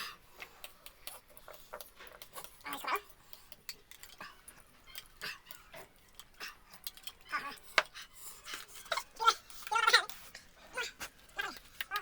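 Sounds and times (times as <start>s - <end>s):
cutlery clicking against a bowl: 1.8s - 8.0s, 11.3s - 12.0s.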